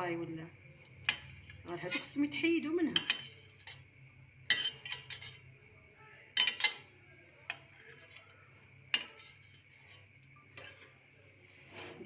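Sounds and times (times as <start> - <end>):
metal utensil clinking on pot: 0.2 - 3.9, 4.5 - 5.5, 6.4 - 11.2.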